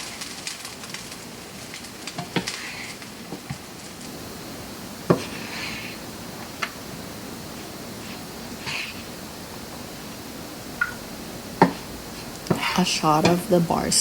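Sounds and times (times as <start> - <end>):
steady hiss: 0.0 - 14.0
utensils knocking on pan and bowl: 12.4 - 13.6.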